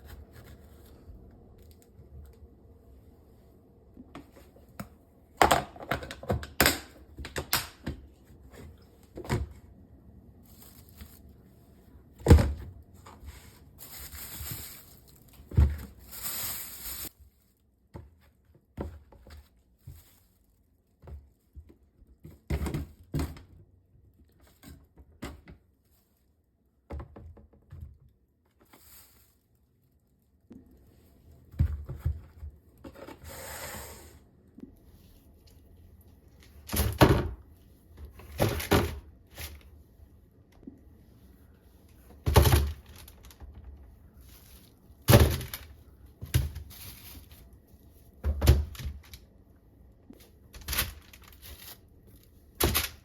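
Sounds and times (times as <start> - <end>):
objects clicking and thunking: 36.4 - 39.6, 42.2 - 43.9, 45.0 - 46.8, 48.2 - 49.4, 52.6 - 53.0.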